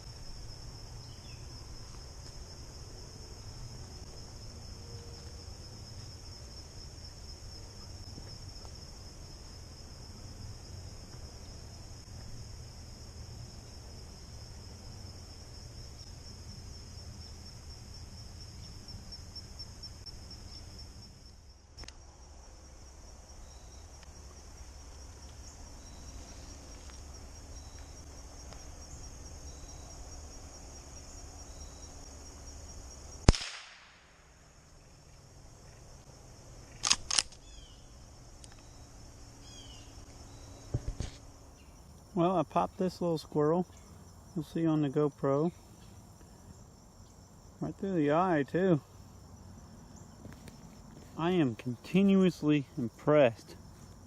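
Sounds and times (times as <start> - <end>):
insects trilling: 0.0 - 54.0
rifle shot: 33.2 - 34.2
rifle lever clicks: 36.8 - 37.4.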